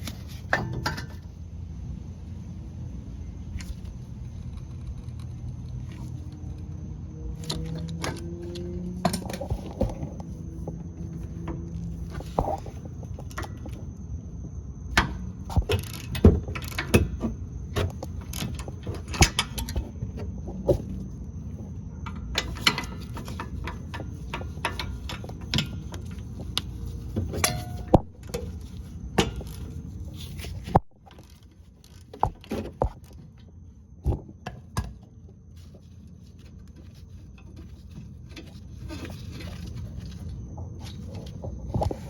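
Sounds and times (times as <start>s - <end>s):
low background hum: 0.0s - 42.0s
tools clicking and knocking: 7.4s - 13.9s, 14.9s - 20.8s, 22.0s - 29.8s.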